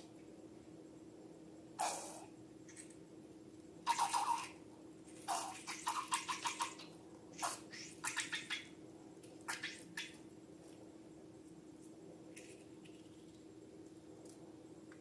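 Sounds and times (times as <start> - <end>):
faint steady hum: 0.0 - 15.0
crackly handling noises: 2.6 - 3.8, 9.1 - 9.5, 10.1 - 15.0.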